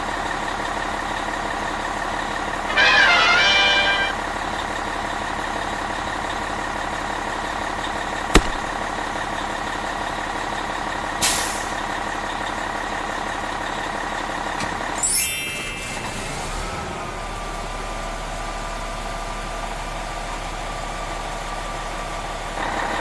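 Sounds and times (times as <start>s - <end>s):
heavy vehicle engine drone: 1.6s - 10.0s
short pitched toot: 2.7s - 4.2s
sharp click: 8.4s - 8.7s
air brake hiss: 11.2s - 11.8s.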